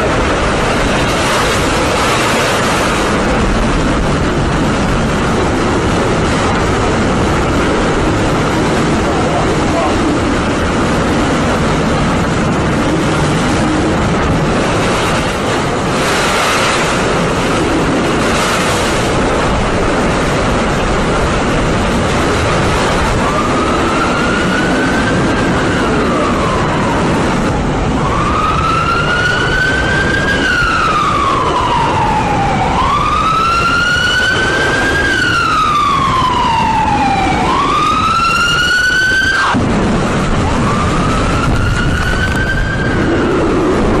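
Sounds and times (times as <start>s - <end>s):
emergency vehicle siren wailing: 0.0s - 44.0s
loud steady rushing noise: 0.0s - 44.0s.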